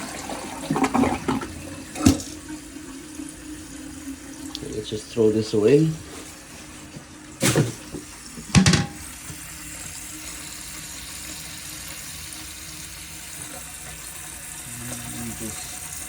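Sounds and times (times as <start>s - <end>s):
toilet tank refilling water hiss: 0.0s - 16.0s.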